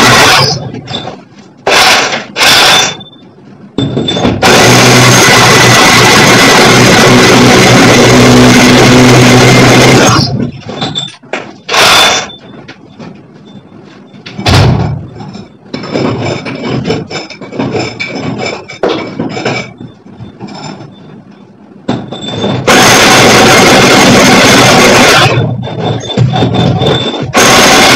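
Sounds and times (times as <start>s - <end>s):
power drill boring brick: 0.0s - 0.6s, 1.7s - 3.0s, 4.4s - 10.4s, 11.7s - 12.3s, 22.6s - 27.9s
scraping and knocking: 12.6s - 21.2s, 25.4s - 27.4s.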